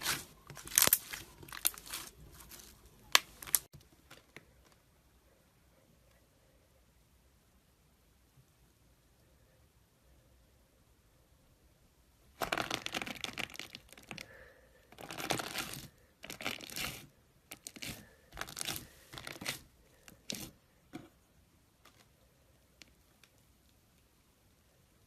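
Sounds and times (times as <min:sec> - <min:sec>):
slime squeezed crackling and popping: 0:00.0 - 0:03.7, 0:12.4 - 0:14.2.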